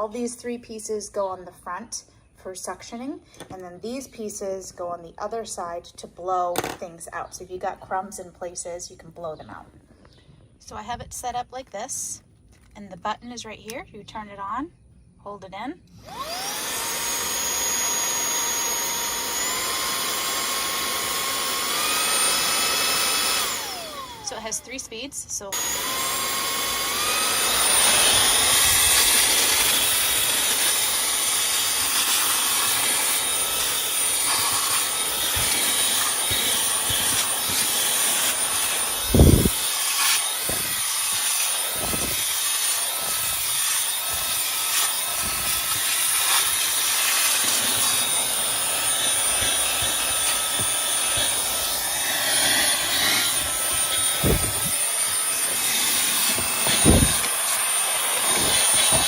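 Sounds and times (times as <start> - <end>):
handheld vacuum whining: 6.5 - 6.8, 15.9 - 59.0.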